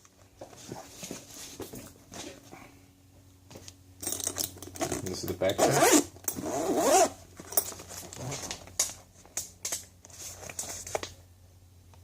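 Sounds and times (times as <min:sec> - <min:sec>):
tools clicking and rustling: 0:04.0 - 0:05.4, 0:07.4 - 0:09.0
zipper opening: 0:04.8 - 0:07.2, 0:08.0 - 0:08.6.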